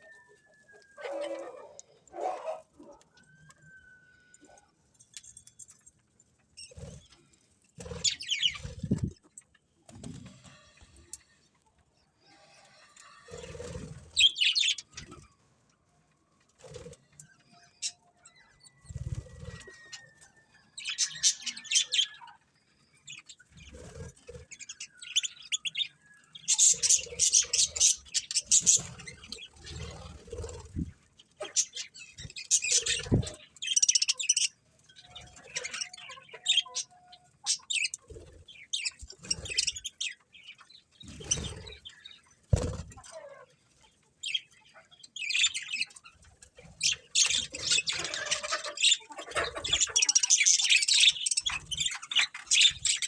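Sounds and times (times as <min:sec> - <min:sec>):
budgerigars chirping: 0:31.4 - 0:38.0, 0:46.8 - 0:53.0.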